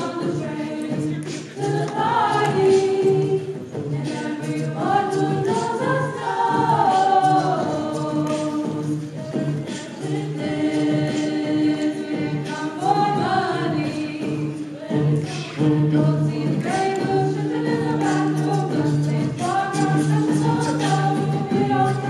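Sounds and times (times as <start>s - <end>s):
group a cappella singing: 0.0s - 22.0s.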